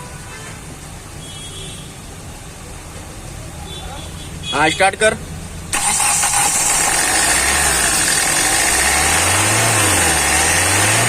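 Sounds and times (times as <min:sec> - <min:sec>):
diesel engine revving: 0:05.7 - 0:11.0.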